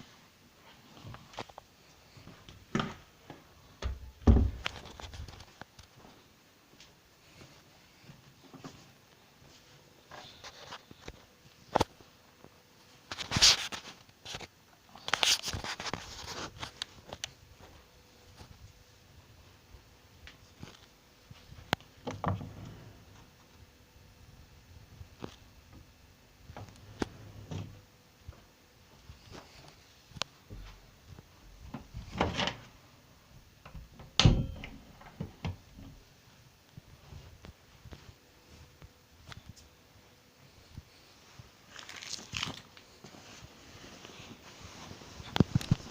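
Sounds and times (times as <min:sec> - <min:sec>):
scraping or rustling noise: 0:04.5 - 0:05.9, 0:13.0 - 0:18.7, 0:41.2 - 0:45.9.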